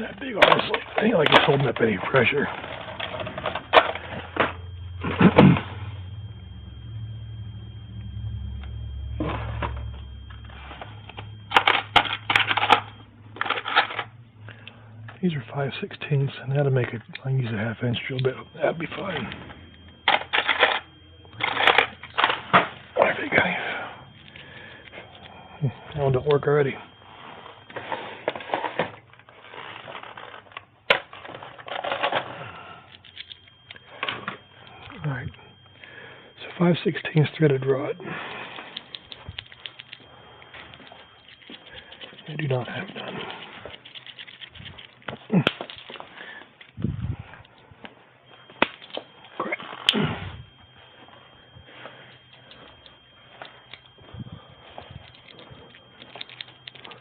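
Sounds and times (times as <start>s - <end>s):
low steady hum: 0.0s - 57.0s
small hardware parts rattling: 28.2s - 34.2s, 38.7s - 46.8s, 54.8s - 57.0s
metal hardware clicking and rattling: 40.7s - 46.8s, 55.0s - 57.0s.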